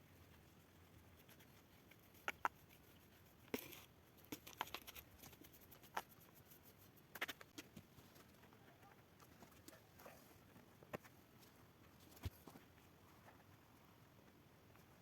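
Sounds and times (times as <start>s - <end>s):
clicks and knocks of objects handled: 3.5s - 6.1s, 7.1s - 8.6s.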